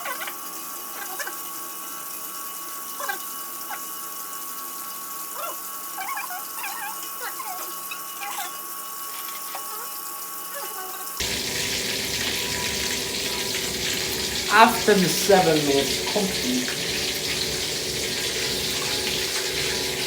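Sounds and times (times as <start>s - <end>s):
chicken sizzling in hot oil: 11.2s - 20.0s.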